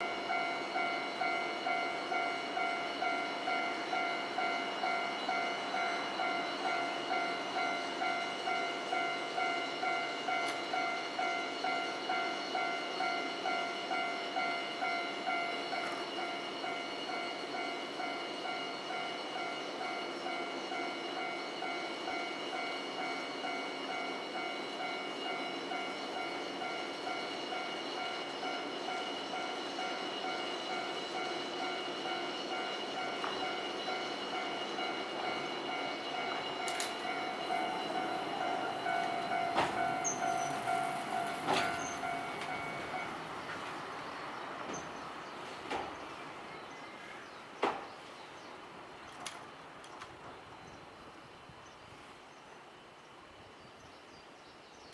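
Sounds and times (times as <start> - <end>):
level-crossing warning bell ringing: 0.0 - 43.6.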